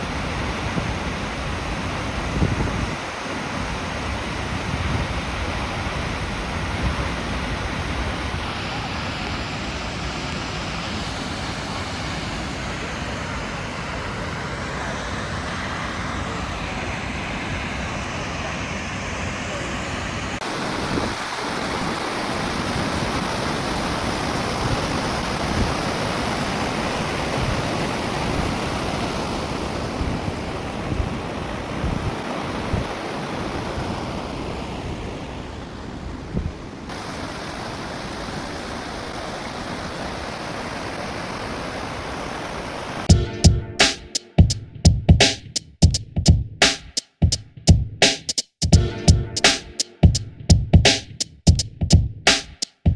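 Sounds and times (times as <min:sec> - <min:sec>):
wind buffeting microphone: 0:00.0 - 0:09.3, 0:20.4 - 0:37.4
waterfall roaring: 0:00.0 - 0:43.2.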